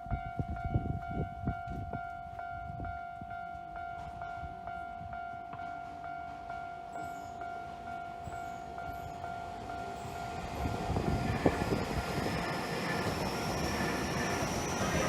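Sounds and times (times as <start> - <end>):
level-crossing warning bell: 0.0 - 15.0
train wheels rumbling on rails: 7.7 - 15.0.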